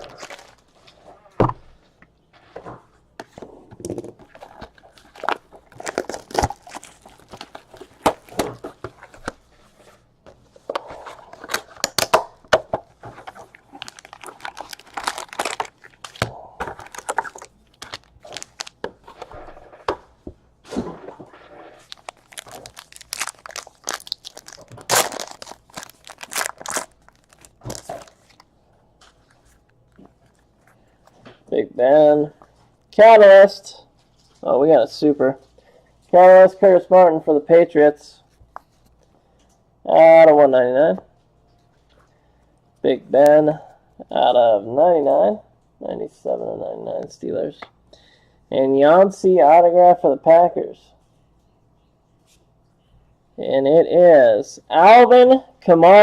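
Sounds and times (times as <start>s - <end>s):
plastic packaging crinkling and tearing: 0.0s - 0.8s, 4.4s - 9.2s, 13.1s - 19.2s, 21.8s - 28.5s
cards being handled: 13.0s - 19.3s, 21.8s - 28.4s.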